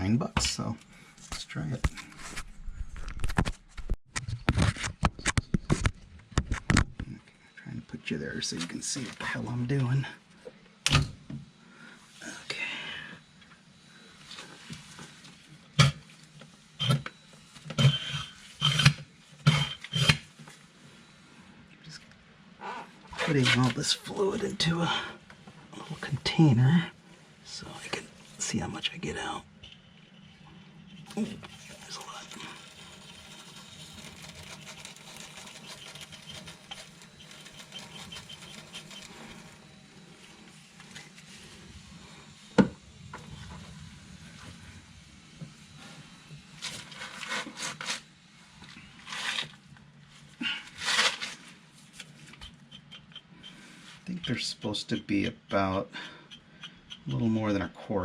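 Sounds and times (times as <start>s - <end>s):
suction gun rasping strokes: 31.1s - 48.1s.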